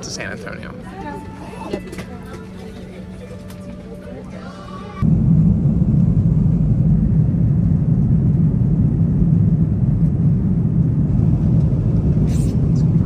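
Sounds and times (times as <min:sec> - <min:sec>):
airliner cabin engine drone: 0:00.0 - 0:13.0.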